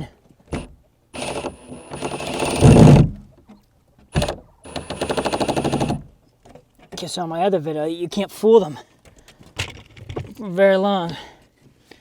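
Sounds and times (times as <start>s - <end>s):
power drill driving screws into wood: 0.5s - 3.2s, 4.1s - 6.1s.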